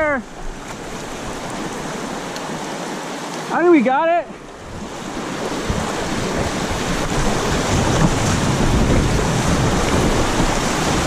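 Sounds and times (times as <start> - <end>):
river water rushing: 0.0 - 11.0
wind buffeting microphone: 4.3 - 11.0.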